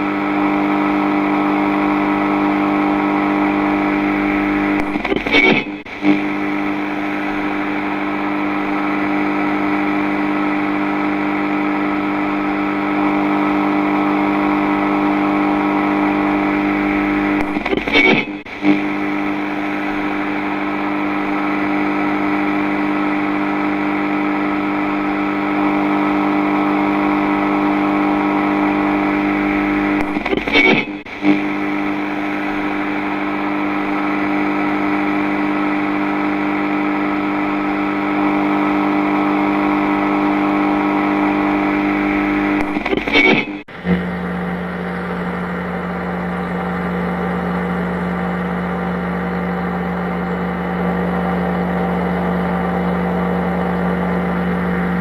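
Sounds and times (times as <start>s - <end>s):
buzzing distorted drone: 0.0s - 55.0s
glitchy stutter: 17.4s - 18.8s, 30.0s - 31.4s, 42.6s - 44.2s.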